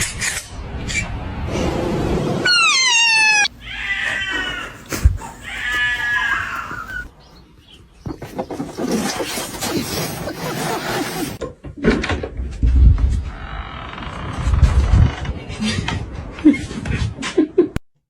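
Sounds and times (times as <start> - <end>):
cat meowing: 2.4 - 7.1.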